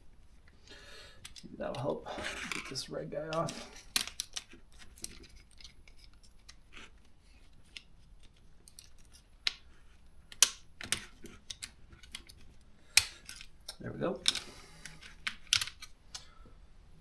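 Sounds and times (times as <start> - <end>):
hand tool clicking on small parts: 1.2 - 1.8, 10.3 - 16.3.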